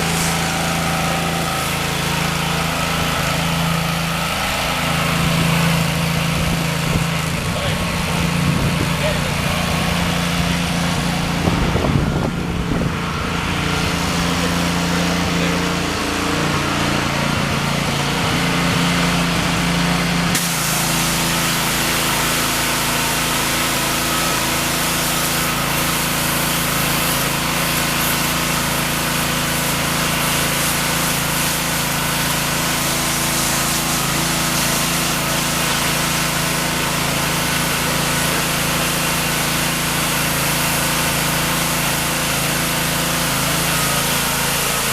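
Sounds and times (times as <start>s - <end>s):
hiss of spraying water: 0.0s - 7.0s, 20.1s - 44.9s
pressure washer engine running: 0.0s - 44.9s.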